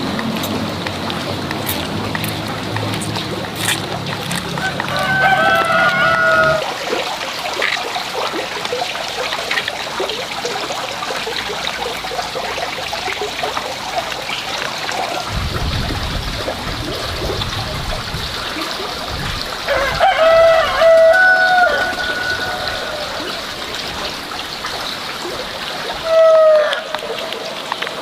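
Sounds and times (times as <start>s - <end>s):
water trickling: 0.0s - 28.0s
rooster crowing: 4.6s - 6.7s, 19.7s - 23.2s
low rumble: 15.3s - 18.4s.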